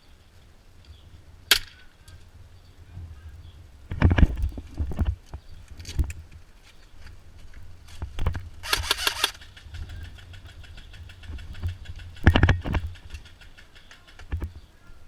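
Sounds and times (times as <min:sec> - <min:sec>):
steady low rumble: 0:00.0 - 0:08.7
airsoft gun firing bursts: 0:08.6 - 0:14.4.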